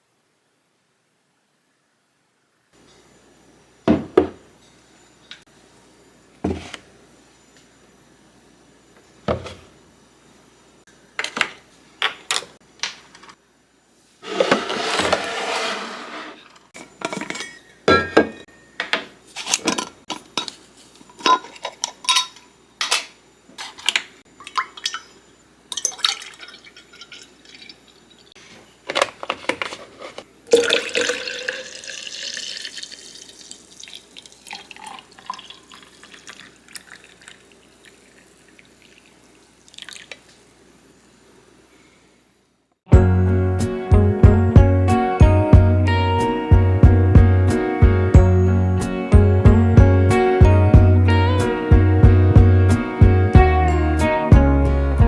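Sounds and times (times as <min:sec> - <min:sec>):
dishes and utensils clinking: 0:16.8 - 0:23.0, 0:23.6 - 0:28.3
running water: 0:24.4 - 0:28.3, 0:30.5 - 0:40.3.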